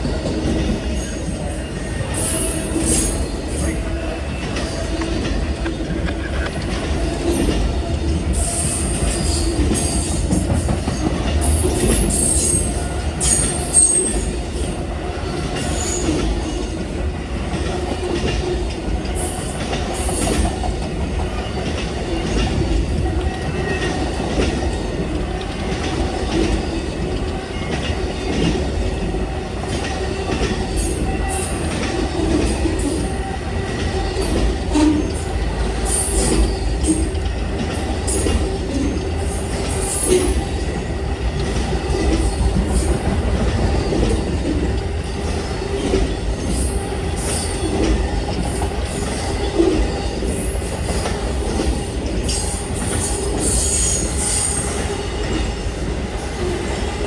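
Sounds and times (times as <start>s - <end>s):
train wheels rumbling on rail: 0.0s - 57.0s
high-pitched wheel squeals: 52.3s - 54.8s.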